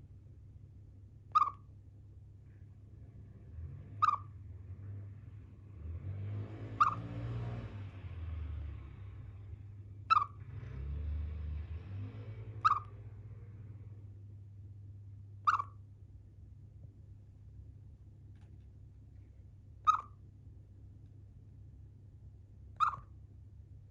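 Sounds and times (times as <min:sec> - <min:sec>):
chipmunk chirping: 0:01.3 - 0:01.7, 0:04.0 - 0:04.3, 0:06.8 - 0:07.0, 0:10.1 - 0:10.4, 0:12.6 - 0:13.0, 0:15.4 - 0:15.9, 0:19.8 - 0:20.2, 0:22.8 - 0:23.1.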